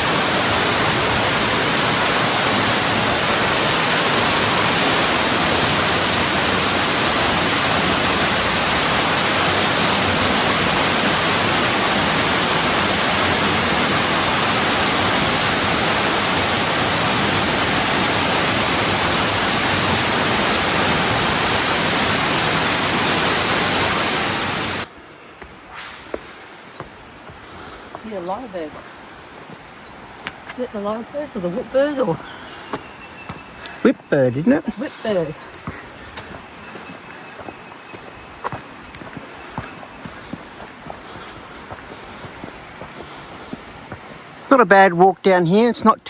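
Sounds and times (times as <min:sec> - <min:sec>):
waterfall pouring: 0:00.0 - 0:24.9.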